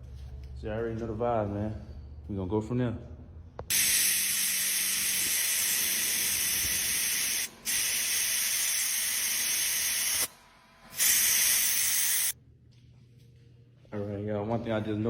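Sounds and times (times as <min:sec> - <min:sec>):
pressurised spray hissing: 0:03.7 - 0:10.3, 0:11.0 - 0:12.4.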